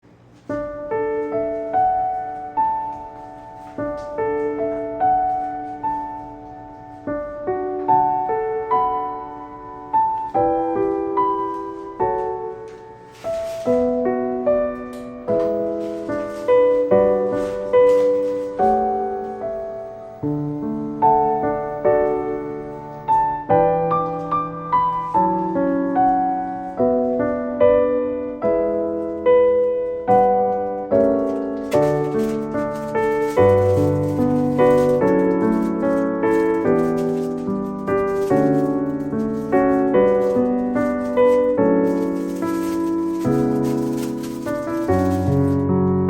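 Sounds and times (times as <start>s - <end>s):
piano music: 0.0s - 46.0s.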